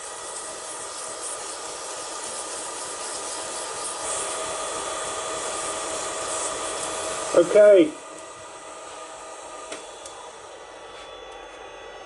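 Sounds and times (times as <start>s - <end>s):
sanding rubbing hiss: 0.0s - 8.0s
lathe motor hum: 0.0s - 12.0s.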